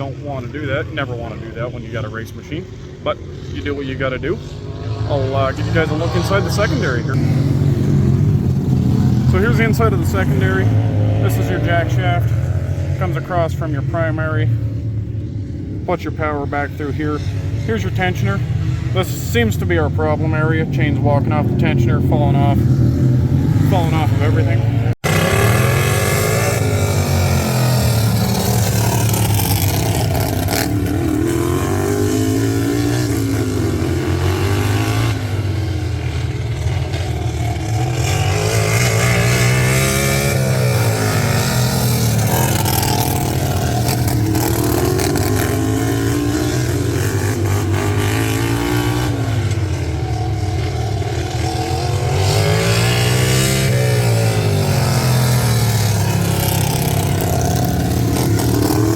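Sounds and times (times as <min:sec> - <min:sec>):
lawn tractor engine revving: 0:19.0 - 0:35.4, 0:37.6 - 0:49.6, 0:51.1 - 0:58.9.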